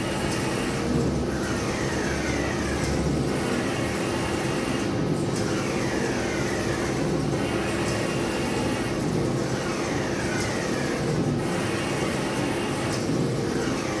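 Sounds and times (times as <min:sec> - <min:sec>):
printer machine hum: 0:00.0 - 0:14.0.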